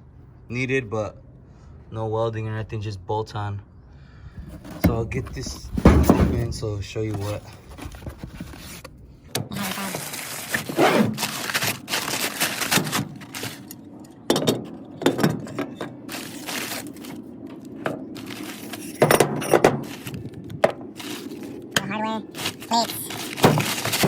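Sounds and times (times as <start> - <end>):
cardboard packaging crackling: 9.6 - 13.8, 16.1 - 18.8, 21.0 - 21.6, 22.3 - 24.0.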